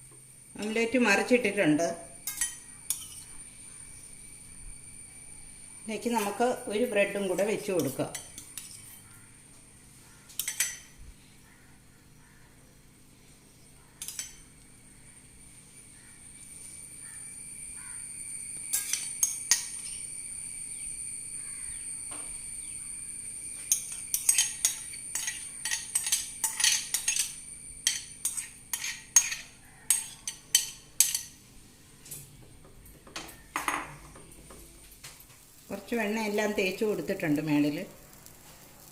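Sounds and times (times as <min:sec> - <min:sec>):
steady high hiss: 0:00.0 - 0:11.4, 0:12.8 - 0:38.9
utensil scraping frying pan: 0:02.2 - 0:03.4, 0:07.3 - 0:09.1, 0:18.7 - 0:20.0, 0:23.6 - 0:31.4.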